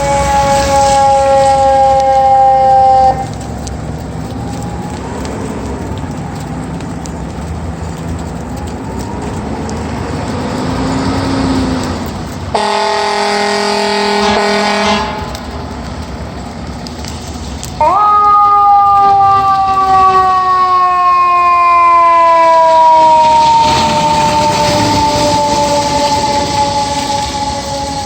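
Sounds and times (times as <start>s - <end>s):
fire engine air horn: 0.0s - 3.6s, 10.9s - 15.8s, 17.8s - 28.0s
engine and traffic noise: 0.0s - 28.0s
faint wailing siren: 0.0s - 28.0s.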